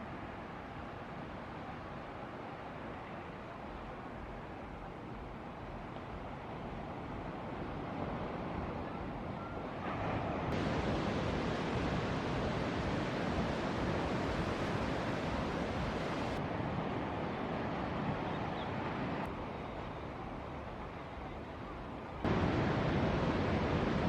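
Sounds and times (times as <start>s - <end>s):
ocean surf breaking: 7.7s - 18.2s, 22.2s - 24.0s
wind on microphone: 10.0s - 16.4s.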